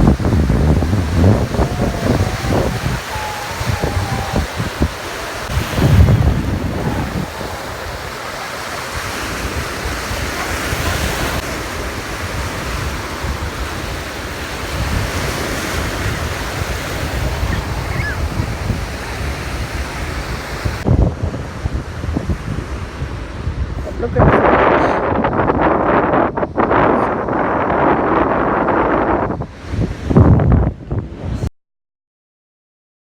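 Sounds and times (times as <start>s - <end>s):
ocean surf washing on beach: 0.0s - 31.4s
wind buffeting microphone: 0.0s - 31.5s.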